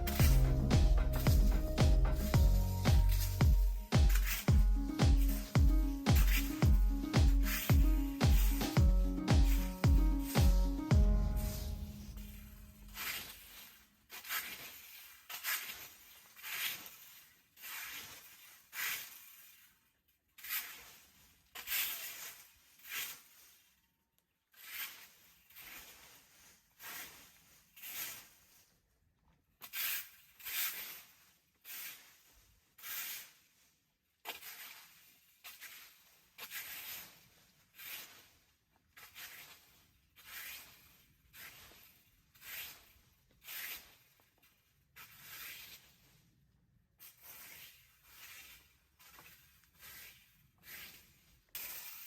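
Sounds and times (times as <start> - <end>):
scraping strokes: 0.0 - 19.7, 24.6 - 28.8, 34.3 - 44.2, 45.0 - 46.2, 47.0 - 52.0.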